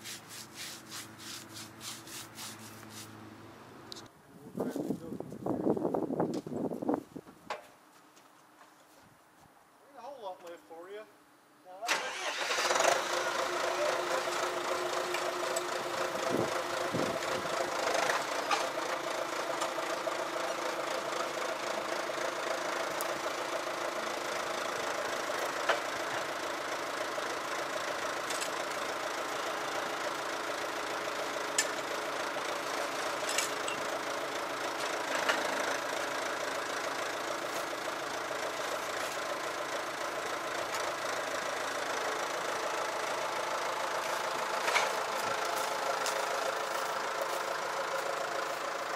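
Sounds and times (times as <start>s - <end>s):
engine idling: 11.9s - 48.9s.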